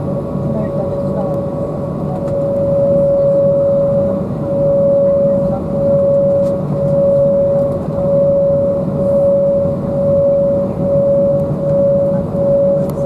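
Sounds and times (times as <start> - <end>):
steady engine whine: 0.0 - 13.0.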